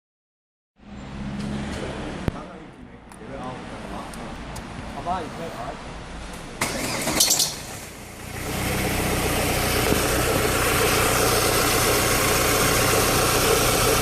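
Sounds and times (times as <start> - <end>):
car engine cranking: 6.6 - 14.0
car engine idling: 6.6 - 14.0.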